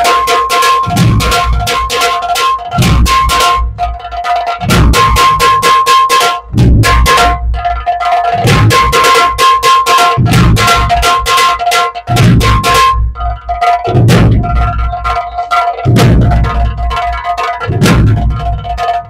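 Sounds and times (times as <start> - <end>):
deep dhol drum beats: 0.0 - 19.0
sharp tasha drum strokes: 0.0 - 19.0
steady ringing tone: 0.0 - 19.0.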